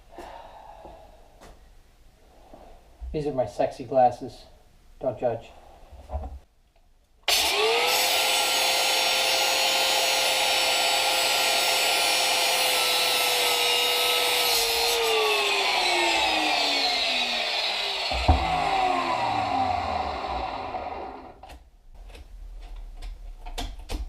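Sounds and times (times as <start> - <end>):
electric power tool whining: 7.3 - 21.5.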